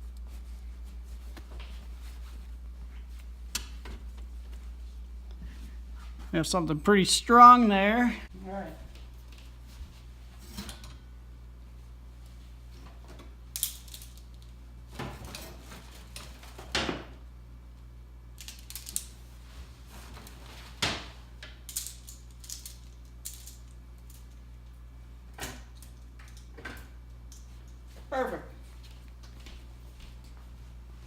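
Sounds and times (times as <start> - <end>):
clothes rustling: 0.0 - 6.4
steady low hum: 0.0 - 31.0.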